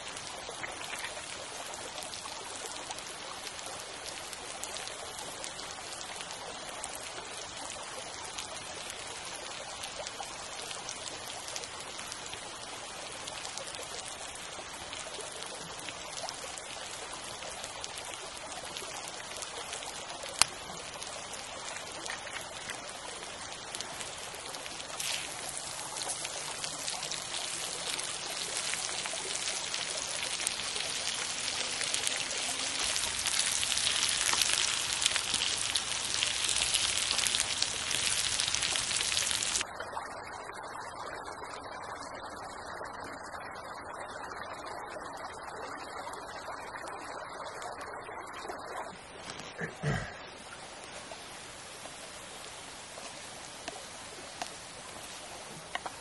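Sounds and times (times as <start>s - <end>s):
running water splashing: 0.0s - 6.0s, 13.2s - 39.7s.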